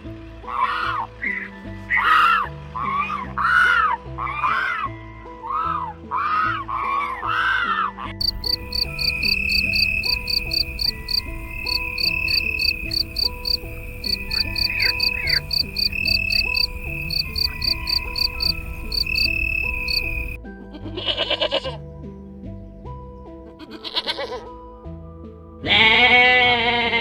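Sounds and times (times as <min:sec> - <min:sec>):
background music: 0:00.0 - 0:27.0
crickets chirping: 0:08.2 - 0:20.4
crow cawing: 0:08.2 - 0:20.4.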